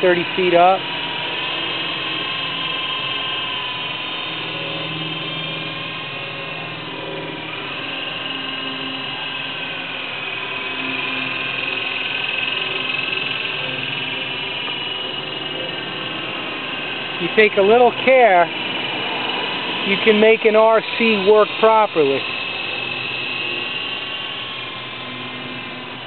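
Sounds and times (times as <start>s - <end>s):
toy helicopter motor whine: 0.0s - 26.0s.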